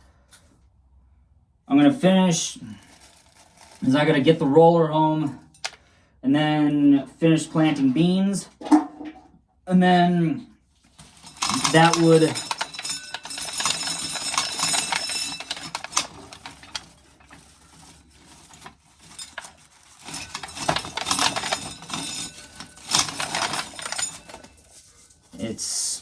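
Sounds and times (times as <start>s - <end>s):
corn kernels clattering in sheller: 10.9s - 26.0s.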